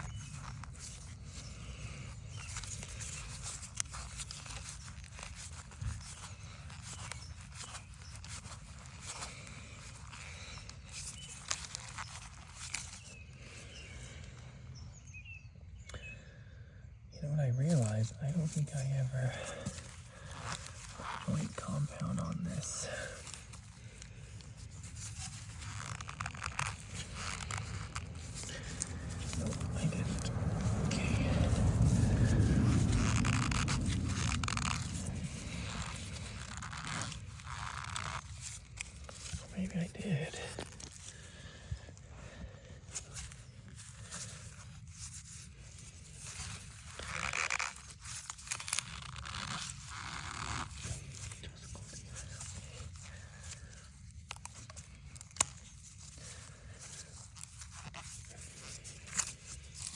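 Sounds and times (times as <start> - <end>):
rustling handling noise: 0.0 - 14.4, 17.4 - 59.9
steady low rumble: 16.2 - 47.1.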